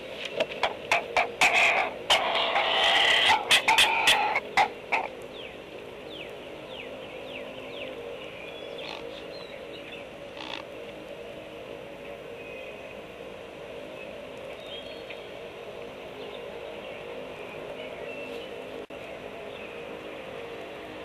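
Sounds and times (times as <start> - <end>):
young birds squawking harshly: 0.9 - 5.1, 8.8 - 9.2, 10.4 - 10.7.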